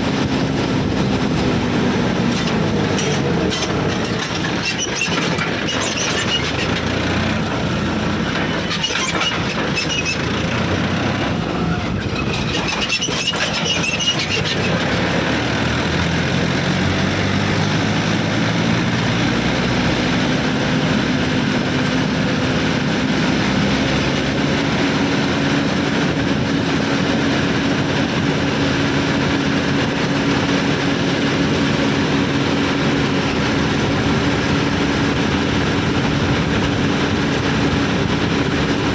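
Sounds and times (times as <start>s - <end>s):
heavy diesel engine: 0.0s - 38.9s
clattering with metallic squeaks: 1.0s - 15.9s.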